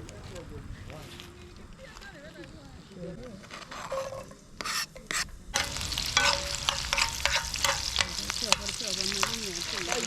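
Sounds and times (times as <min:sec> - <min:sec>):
stirring in a pan: 0:03.7 - 0:10.0
food sizzling in a pan: 0:04.6 - 0:10.0.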